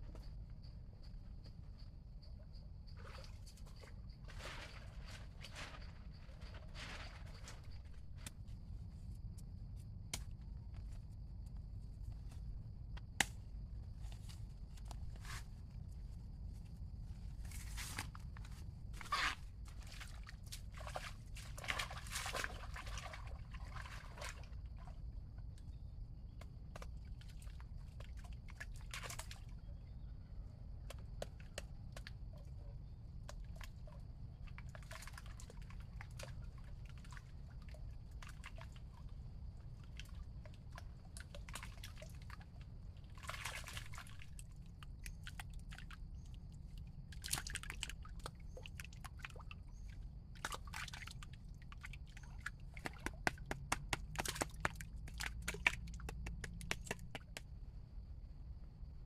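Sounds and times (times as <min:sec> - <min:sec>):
water sloshing and dripping: 0:02.9 - 0:09.0, 0:18.0 - 0:25.8, 0:26.4 - 0:29.7, 0:30.9 - 0:57.4.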